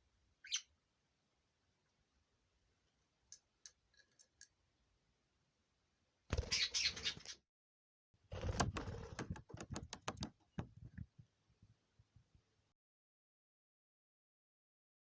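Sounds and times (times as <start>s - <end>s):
sharp clicks and taps: 8.4s - 11.2s.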